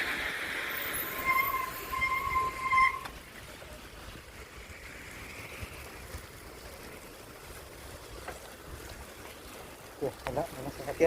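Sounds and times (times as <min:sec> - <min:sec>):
wind rushing while cycling: 0:00.0 - 0:09.8
high-pitched squeal: 0:00.6 - 0:03.1.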